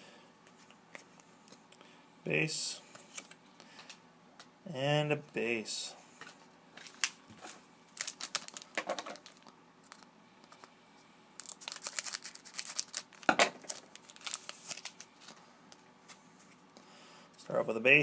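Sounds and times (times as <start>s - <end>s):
card pack wrapper tearing: 7.9s - 10.6s, 11.4s - 15.3s.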